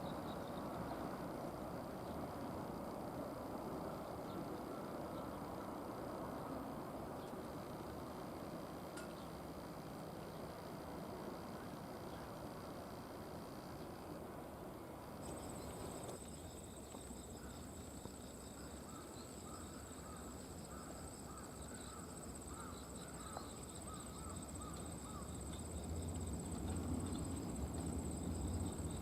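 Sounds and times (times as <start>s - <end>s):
insects trilling: 0.0s - 29.0s
short insect chirps: 15.2s - 29.0s.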